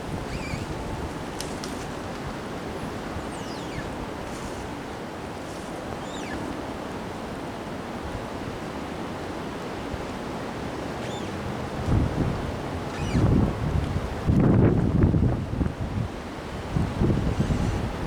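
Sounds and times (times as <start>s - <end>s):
wind roaring: 0.0s - 18.0s
faint falling whistles: 6.0s - 6.5s, 11.0s - 11.4s, 12.9s - 13.3s.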